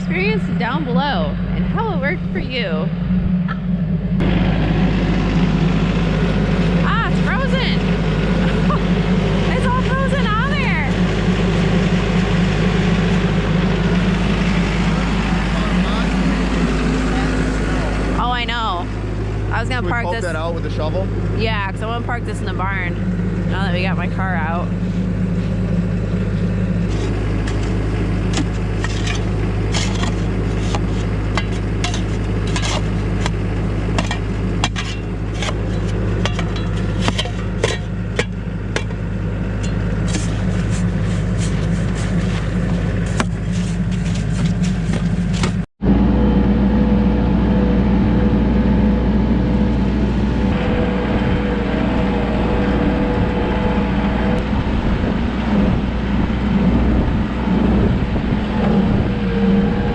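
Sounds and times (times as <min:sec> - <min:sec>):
vehicle engine running: 0:00.0 - 0:59.9
steady high whine: 0:45.8 - 0:59.9.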